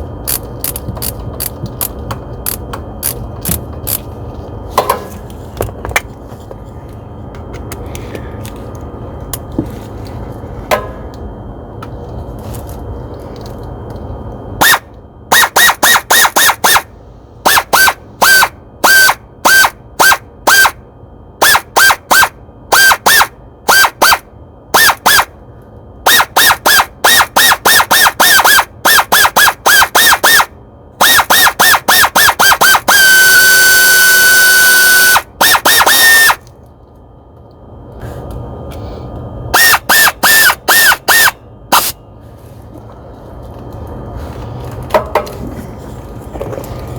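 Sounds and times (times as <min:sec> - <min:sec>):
air ratchet whining: 0:00.0 - 0:04.1, 0:14.6 - 0:20.8, 0:21.4 - 0:25.3, 0:26.0 - 0:36.5, 0:39.5 - 0:42.0.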